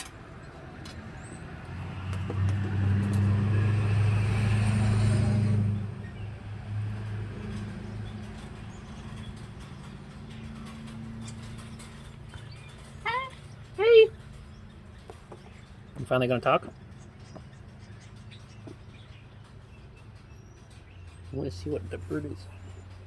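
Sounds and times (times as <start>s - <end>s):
vehicle engine passing by: 0.0s - 13.0s.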